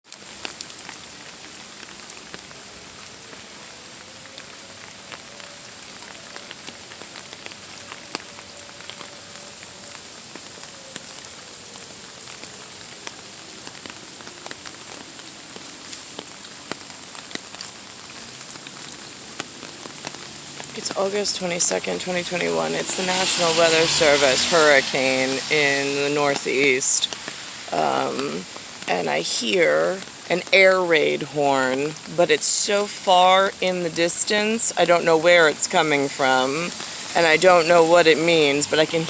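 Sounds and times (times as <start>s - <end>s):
rain pattering: 0.0s - 39.0s
distant air raid siren wailing: 3.1s - 15.9s, 19.5s - 29.4s.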